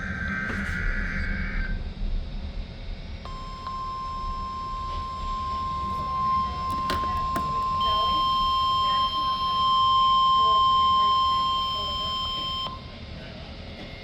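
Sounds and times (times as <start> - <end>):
steady warning alarm tone: 3.2 - 13.0
radio hum and hiss: 3.2 - 14.0.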